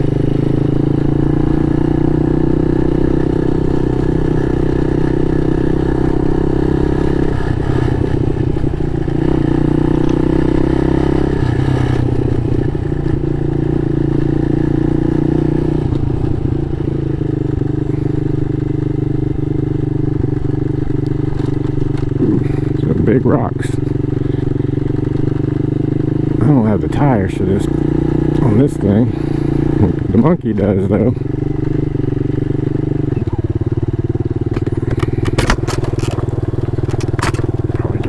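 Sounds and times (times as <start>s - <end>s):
small motorcycle engine running: 0.0s - 38.0s
clatter over uneven ground: 34.4s - 38.0s.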